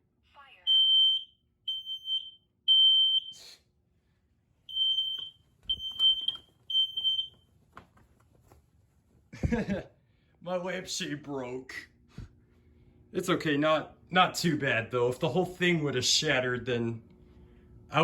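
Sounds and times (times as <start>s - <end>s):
smoke alarm shrill beeps: 0.6s - 3.6s, 4.7s - 7.4s.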